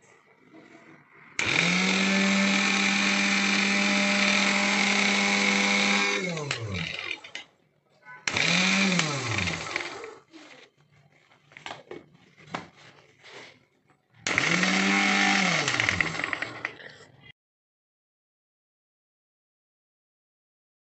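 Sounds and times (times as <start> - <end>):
mixer grinder motor whine: 1.1 - 7.5, 8.2 - 10.8, 14.2 - 16.8.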